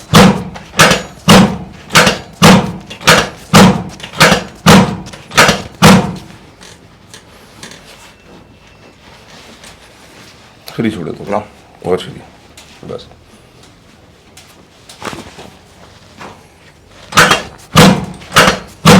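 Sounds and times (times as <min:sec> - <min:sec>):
heavy thumps: 0:00.0 - 0:06.5, 0:17.1 - 0:18.9.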